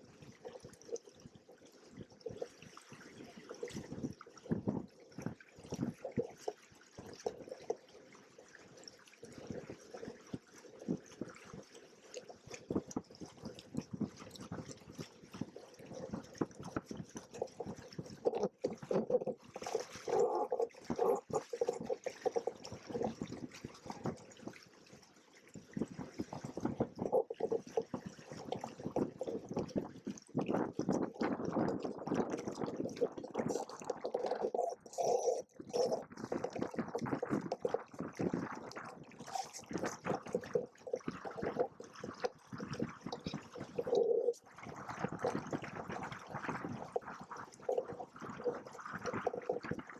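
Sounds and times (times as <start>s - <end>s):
water splashing against hulls: 0.0s - 49.9s.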